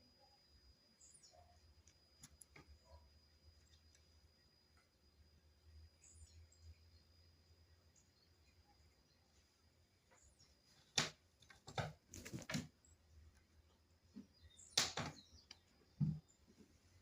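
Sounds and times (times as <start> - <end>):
sharp taps and knocks: 14.2 - 16.2.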